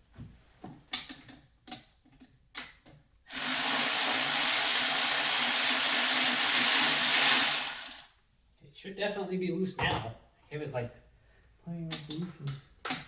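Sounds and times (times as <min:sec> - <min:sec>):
tools clicking and knocking: 0:00.9 - 0:03.1
power tool running: 0:03.3 - 0:08.1.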